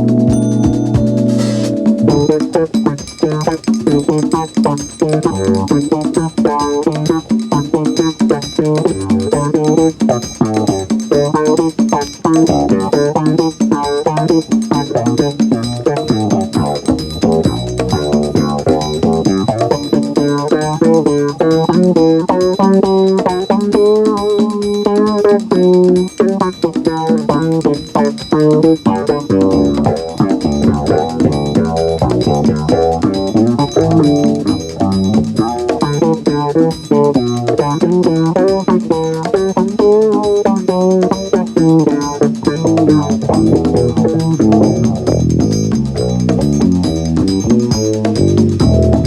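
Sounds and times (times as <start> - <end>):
bass guitar: 0.0 - 2.7, 9.0 - 11.6, 12.3 - 22.3, 27.0 - 49.0
jazz-funk instrumental music: 0.0 - 49.0
melodic electric guitar line: 0.0 - 49.0
steady drum beat: 0.0 - 49.0.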